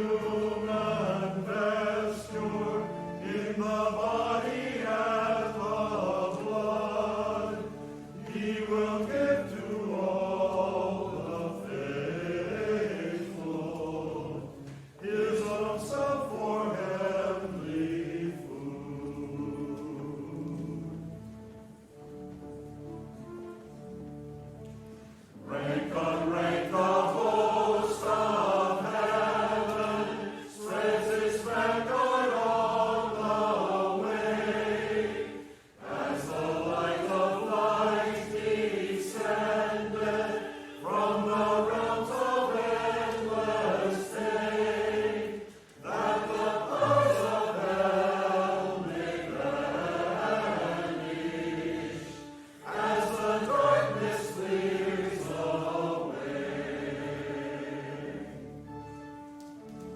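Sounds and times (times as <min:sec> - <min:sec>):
choir breaths: 0:00.0 - 0:23.7, 0:24.6 - 0:58.7
church choir singing: 0:00.0 - 0:59.9.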